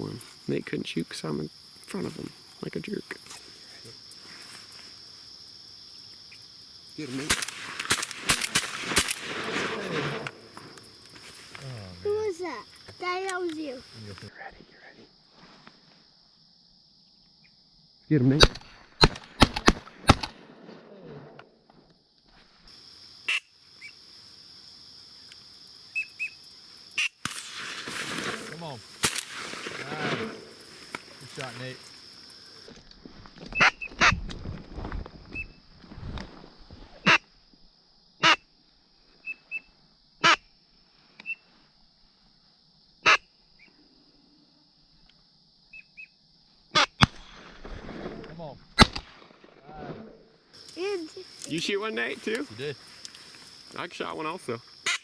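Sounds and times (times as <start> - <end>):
insects buzzing: 0.0 - 55.0
sharp crack: 7.0 - 12.4, 18.3 - 21.6, 27.0 - 32.7, 46.8 - 55.0.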